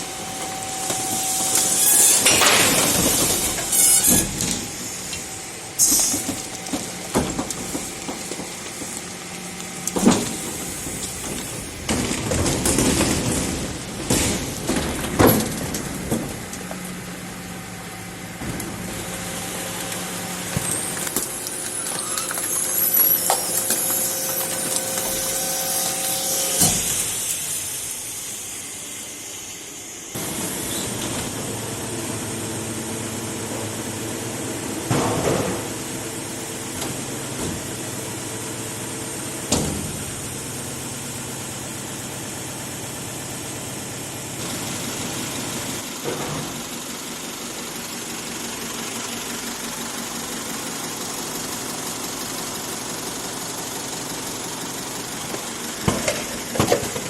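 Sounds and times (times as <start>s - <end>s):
high squeal: 0.0s - 7.0s, 19.2s - 31.0s
garbage truck engine running: 0.0s - 57.0s
loud clanks and thuds: 9.9s - 17.0s, 34.9s - 35.8s, 39.5s - 40.2s.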